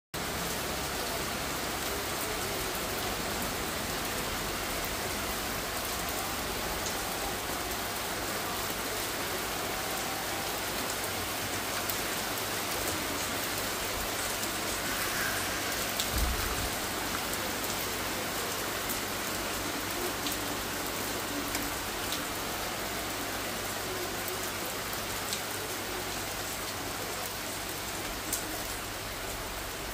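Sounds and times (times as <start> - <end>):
rain pattering on surfaces: 0.2 - 29.9.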